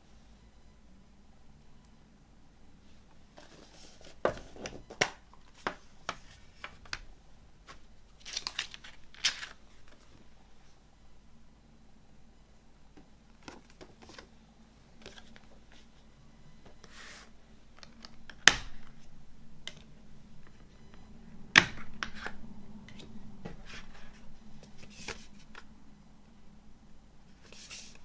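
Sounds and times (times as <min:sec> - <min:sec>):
hands handling packaging: 0:03.3 - 0:10.2.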